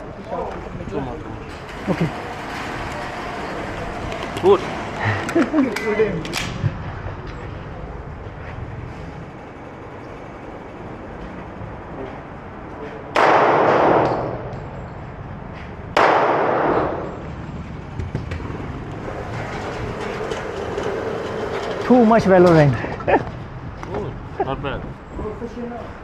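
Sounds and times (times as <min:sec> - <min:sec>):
gunshots ringing: 0:13.2 - 0:14.4, 0:16.0 - 0:17.0.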